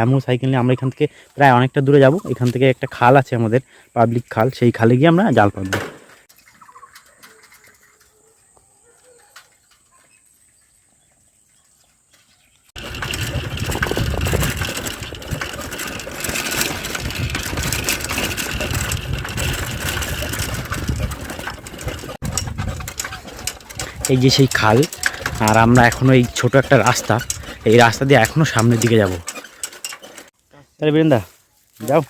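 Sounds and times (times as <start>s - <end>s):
wind buffeting microphone: 12.8s - 28.7s.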